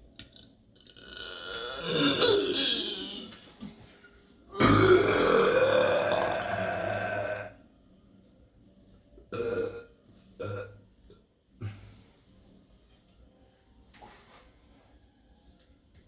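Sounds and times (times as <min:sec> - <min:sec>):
man burping: 0:00.2 - 0:03.3, 0:04.5 - 0:07.6, 0:09.3 - 0:10.8.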